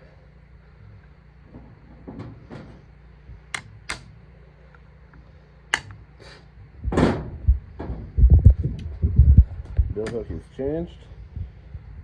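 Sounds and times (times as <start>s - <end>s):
sharp metal tool clicks: 3.6s - 4.1s, 5.7s - 6.0s.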